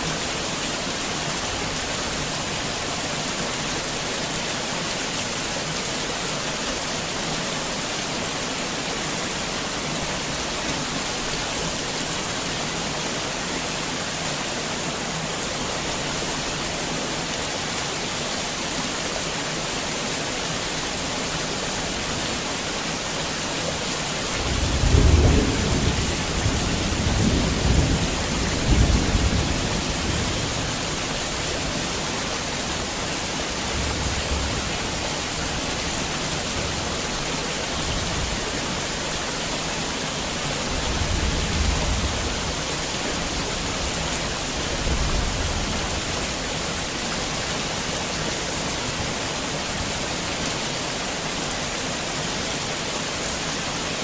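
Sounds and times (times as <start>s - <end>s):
heavy rain falling: 0.0s - 54.0s
thunder rumbling: 24.4s - 30.7s.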